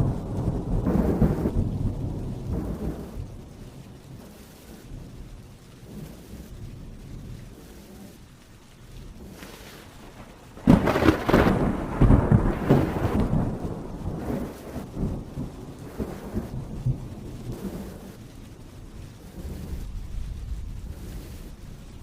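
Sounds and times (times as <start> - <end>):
heavy rain: 0.0 - 22.0
thunder rumbling: 0.0 - 22.0.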